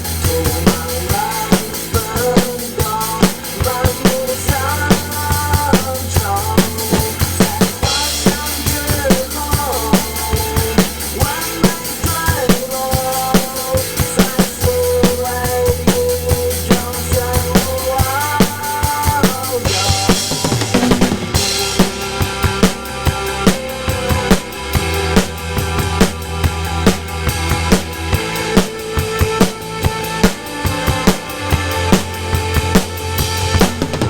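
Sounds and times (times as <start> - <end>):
drum kit playing: 0.0 - 34.0
pop backing track: 0.0 - 34.0.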